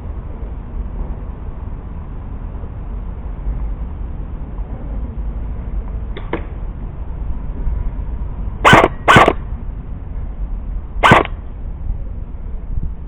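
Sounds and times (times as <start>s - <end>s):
dog barking loudly: 8.7s - 9.4s, 11.0s - 11.3s.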